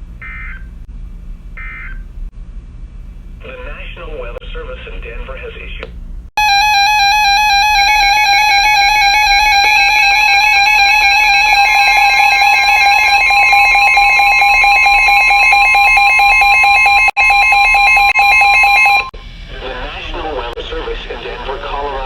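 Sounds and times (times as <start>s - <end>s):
two-tone alarm: 6.4s - 19.2s.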